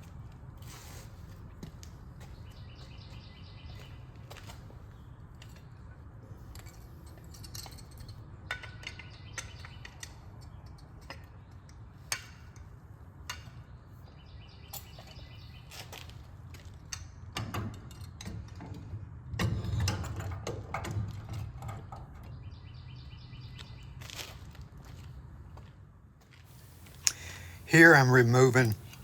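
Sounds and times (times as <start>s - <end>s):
steady low hum: 26.5s - 29.0s.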